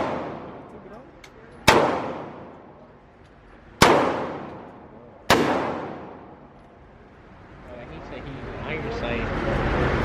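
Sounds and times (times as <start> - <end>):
echoing gunshots: 0.0 - 0.8, 1.6 - 2.8, 3.7 - 6.6.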